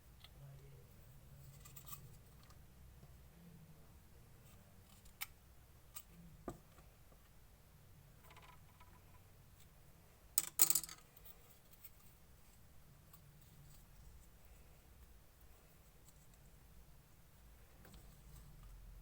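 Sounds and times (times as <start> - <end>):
soft rustle: 11.1 - 19.0.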